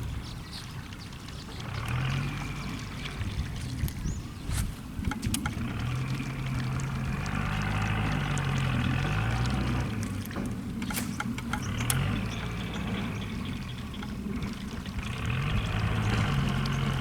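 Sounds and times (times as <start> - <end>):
boat motor humming: 0.0 - 17.0
water rushing beside hull: 0.0 - 17.0
sharp clicks: 5.0 - 5.6, 10.8 - 12.4.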